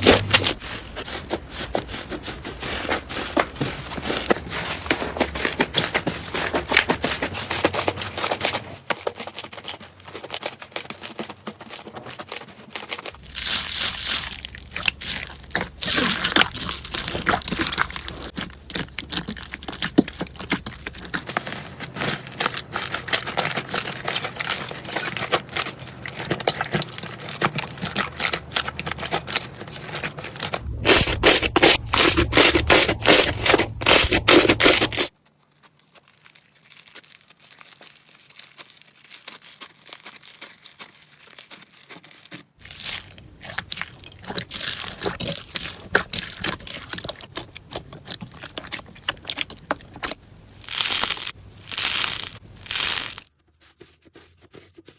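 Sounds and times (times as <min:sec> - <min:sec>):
slime crackling and popping: 0:13.0 - 0:29.6, 0:30.4 - 0:53.3.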